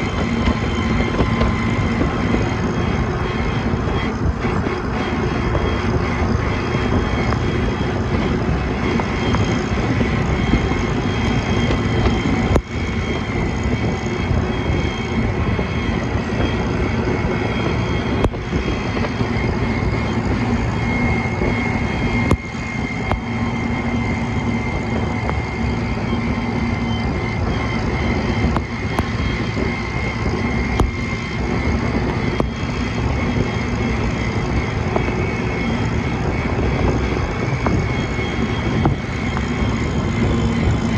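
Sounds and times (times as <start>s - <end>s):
tractor engine running: 0.0s - 40.9s.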